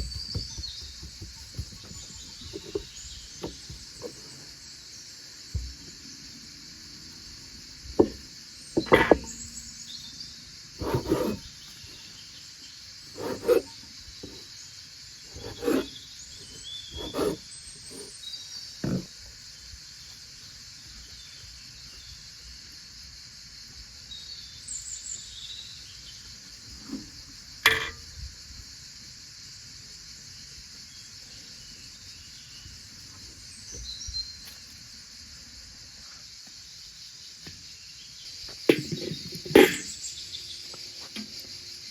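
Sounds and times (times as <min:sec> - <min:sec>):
knocks and handling sounds: 0:00.0 - 0:04.4, 0:08.0 - 0:09.4, 0:10.8 - 0:11.5, 0:13.2 - 0:14.4, 0:27.7 - 0:28.0, 0:38.7 - 0:39.9
insect chorus: 0:00.0 - 0:41.9.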